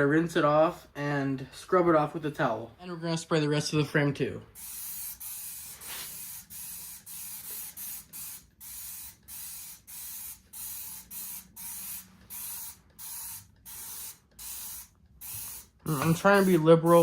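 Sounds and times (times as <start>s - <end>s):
spray bottle hissing: 4.6s - 17.0s.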